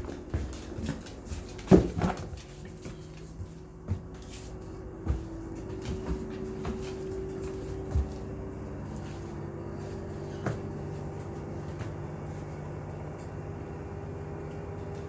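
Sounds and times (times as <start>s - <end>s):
washing machine motor hum: 0.0s - 15.0s.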